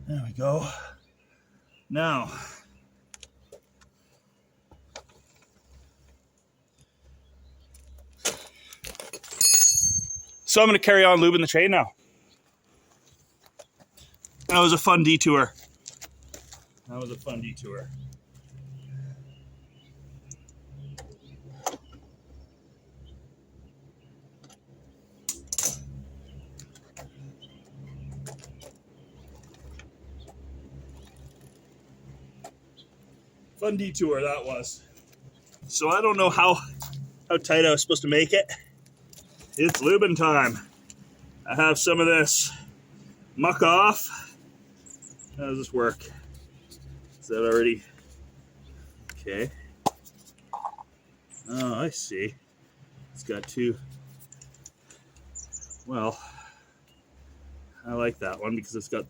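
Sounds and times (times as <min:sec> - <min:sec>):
low background hum: 0:00.0 - 0:59.0
metallic clinks of tools: 0:09.2 - 0:10.5.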